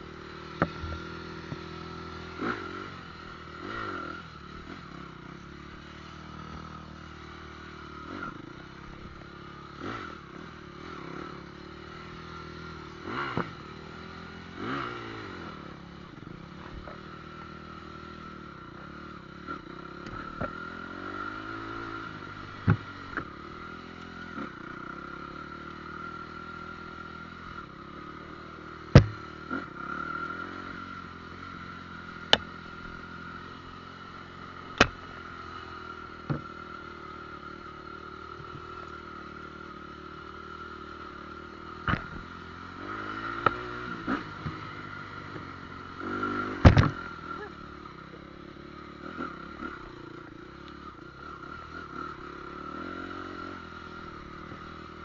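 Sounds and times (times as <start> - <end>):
motorcycle engine revving: 0.0 - 55.0
sharp knocks: 28.9 - 29.2, 46.6 - 47.0.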